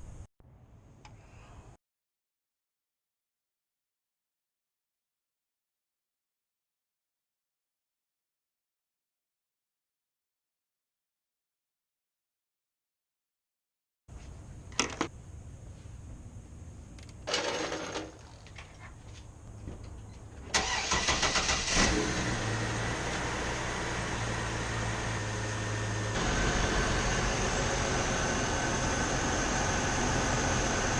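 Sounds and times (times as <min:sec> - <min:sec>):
click: 0:17.0 - 0:17.2
car engine starter cranking: 0:20.5 - 0:23.5
car engine idling: 0:20.6 - 0:30.9.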